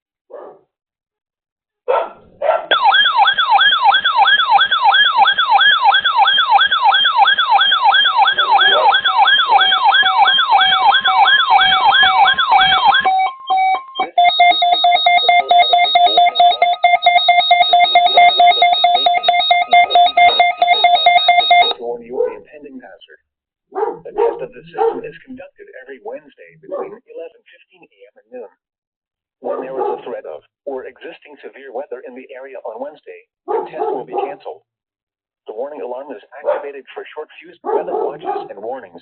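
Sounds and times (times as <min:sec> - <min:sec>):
steady piercing alarm tone: 0:02.7 - 0:21.8
sweeping electronic siren tone: 0:02.7 - 0:21.8.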